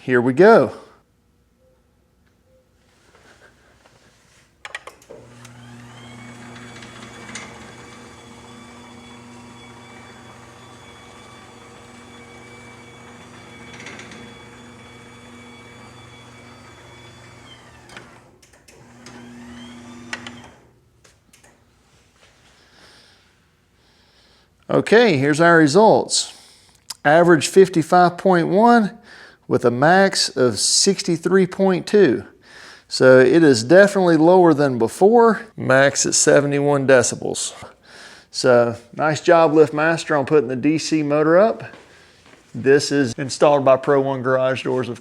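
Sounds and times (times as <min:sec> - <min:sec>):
garage door opener motor humming: 0:04.7 - 0:20.8.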